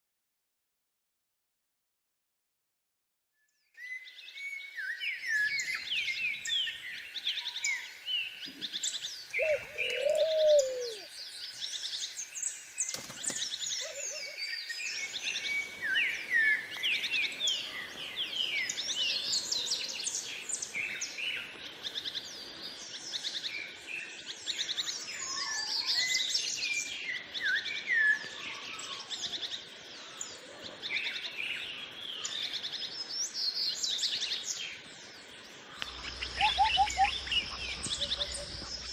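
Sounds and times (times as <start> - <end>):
chorus of small birds: 3.6 - 38.9
lower arching bird call: 9.4 - 11.1, 35.9 - 38.9.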